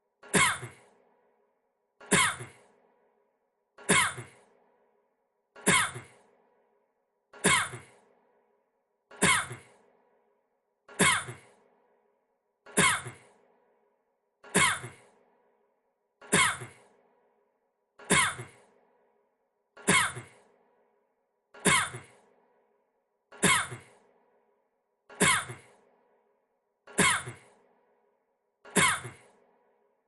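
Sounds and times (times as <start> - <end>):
man coughing: 19.8 - 20.4.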